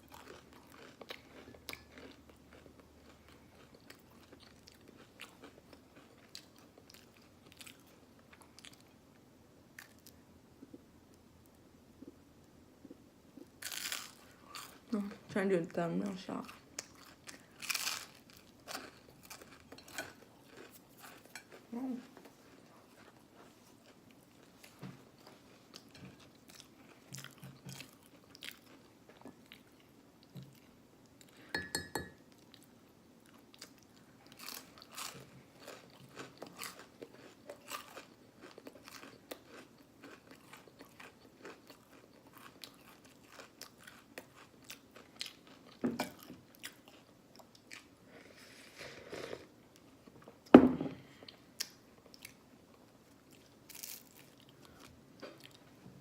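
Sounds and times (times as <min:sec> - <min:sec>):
chewing with mouth clicks: 0:33.3 - 0:47.9.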